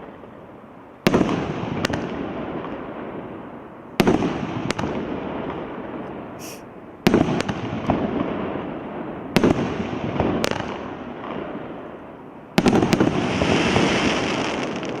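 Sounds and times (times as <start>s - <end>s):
firework shell bursts: 6.4s - 6.6s.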